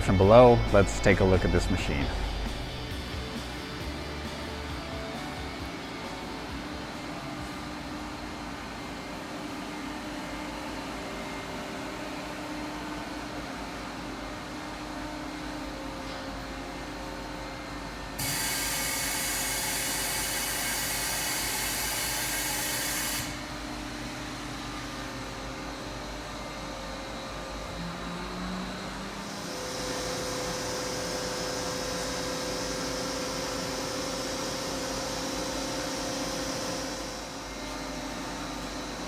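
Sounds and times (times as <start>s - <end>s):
machine hum: 0.0s - 8.4s, 23.3s - 39.0s.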